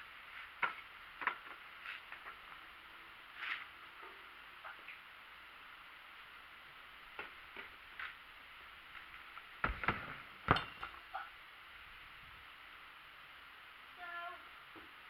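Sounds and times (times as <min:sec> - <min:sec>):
bike clattering on ground: 0:09.6 - 0:11.1.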